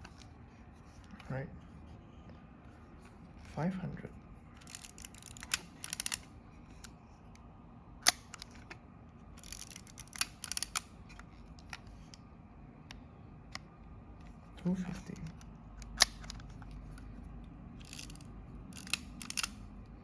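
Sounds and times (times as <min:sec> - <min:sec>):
camera cocking ratchet clicks: 0:04.6 - 0:06.9, 0:09.4 - 0:11.0, 0:17.8 - 0:19.6.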